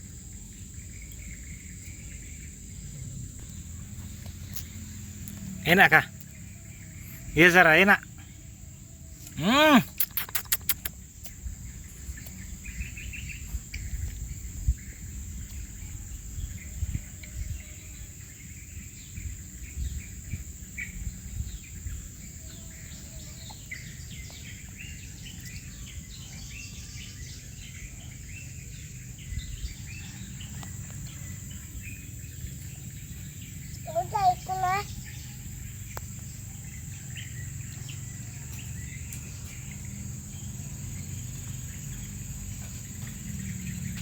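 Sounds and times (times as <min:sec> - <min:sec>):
bird chirps: 0:00.0 - 0:17.8
high insect drone: 0:00.0 - 0:44.0.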